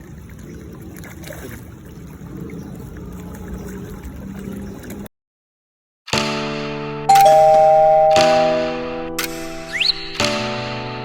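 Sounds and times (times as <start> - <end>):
chiming musical tone: 7.1 - 9.2.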